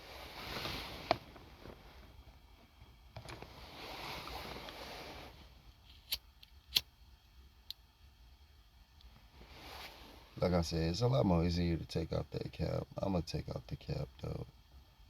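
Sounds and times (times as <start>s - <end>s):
soft shuffling of tools: 3.2s - 6.1s.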